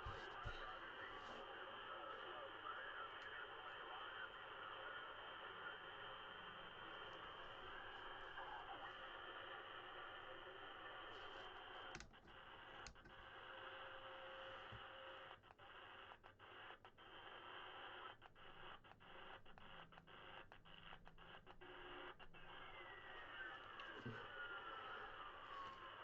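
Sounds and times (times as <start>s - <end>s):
radio receiver hiss: 0.0s - 26.0s.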